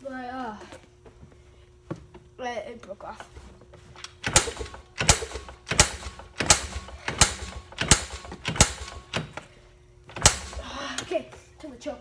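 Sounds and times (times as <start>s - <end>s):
sharp mechanical clacks: 4.0s - 9.4s, 10.1s - 10.6s.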